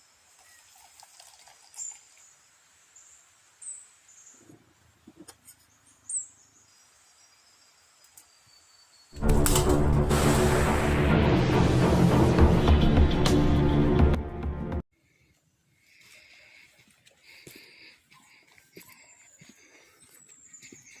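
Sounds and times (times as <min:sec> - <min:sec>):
loud music: 0:09.2 - 0:14.8.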